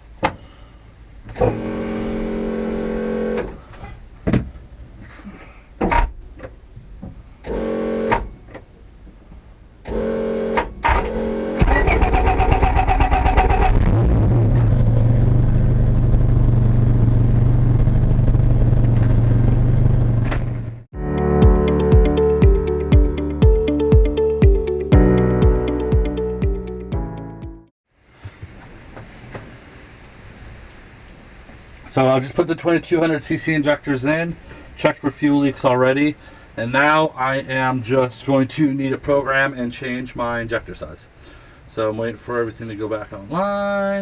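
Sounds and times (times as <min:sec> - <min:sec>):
car engine running: 0:01.4 - 0:03.6, 0:10.9 - 0:20.9
starter cranking: 0:09.9 - 0:13.9.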